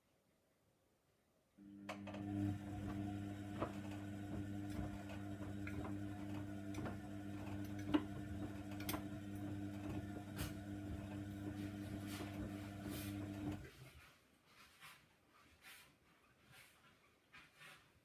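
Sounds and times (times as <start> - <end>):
washer drum motor humming: 1.6 - 13.7.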